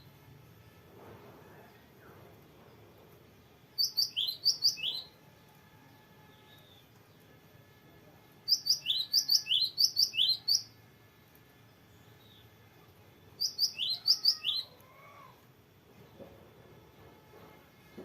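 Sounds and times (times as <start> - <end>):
bird singing sharp whistled notes: 3.8 - 5.2, 8.5 - 10.7, 13.4 - 14.7.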